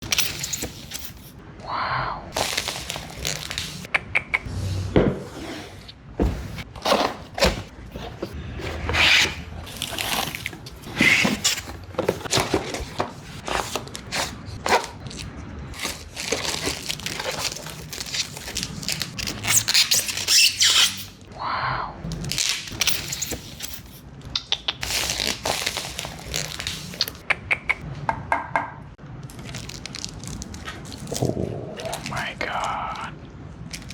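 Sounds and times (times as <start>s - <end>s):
cardboard and plastic rustling: 2.4s - 3.9s, 5.6s - 20.6s, 24.8s - 27.2s, 29.2s - 33.9s.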